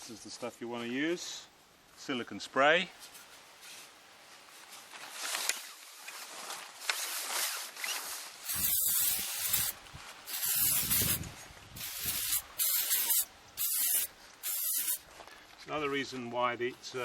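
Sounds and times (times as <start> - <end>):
aerosol spray hissing: 8.4 - 11.2, 11.8 - 15.0.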